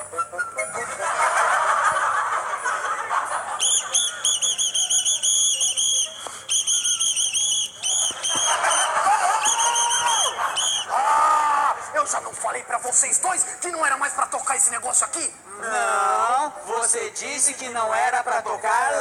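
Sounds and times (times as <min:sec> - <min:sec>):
pea whistle chirping: 0:00.0 - 0:01.3, 0:03.5 - 0:10.9.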